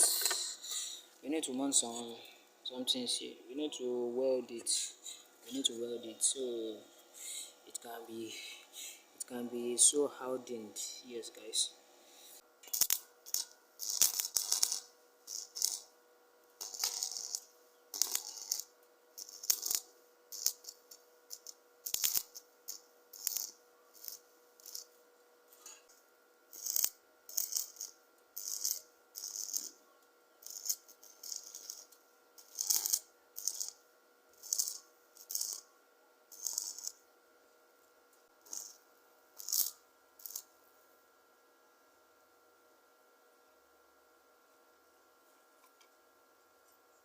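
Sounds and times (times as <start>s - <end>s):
faint steady hum: 0.0s - 47.0s
electric arc welding bursts: 11.4s - 15.9s, 16.6s - 24.9s, 26.5s - 29.8s, 30.4s - 33.8s, 34.4s - 35.6s, 36.3s - 37.0s, 38.4s - 38.8s, 39.4s - 40.5s.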